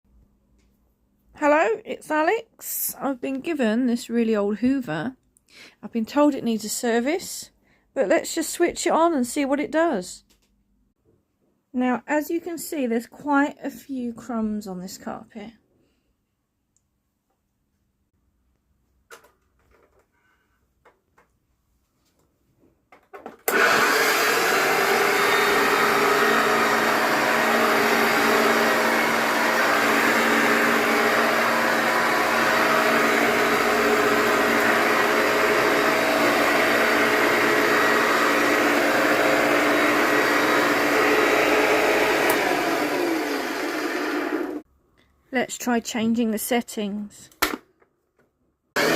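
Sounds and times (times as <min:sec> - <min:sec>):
vacuum cleaner running: 0:23.5 - 0:44.6.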